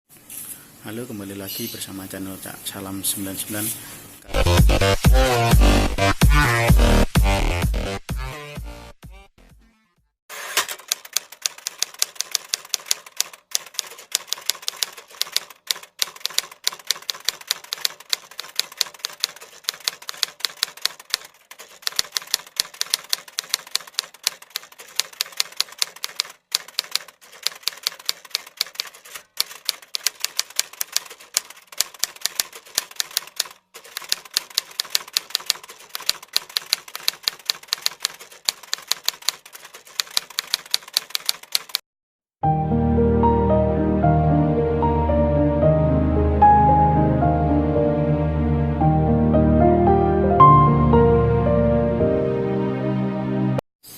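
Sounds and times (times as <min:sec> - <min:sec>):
fast sharp clicks: 0:10.6 - 0:41.8.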